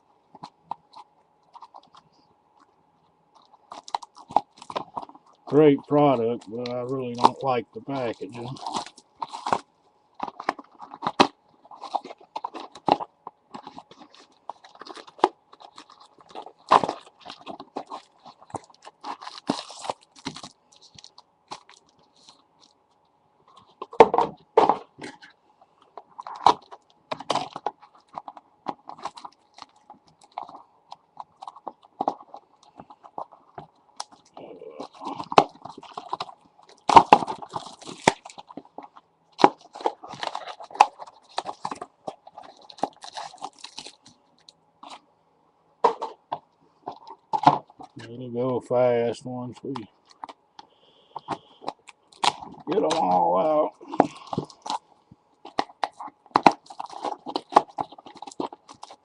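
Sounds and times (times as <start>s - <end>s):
knife cutting card packaging: 55.5s - 59.0s.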